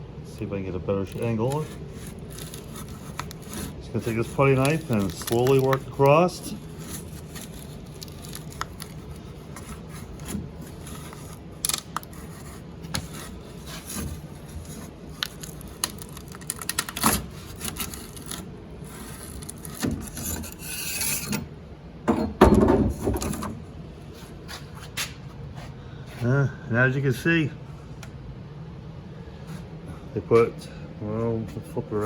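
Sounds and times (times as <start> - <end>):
metal putty knife scraping: 1.1 - 11.4, 12.1 - 21.5.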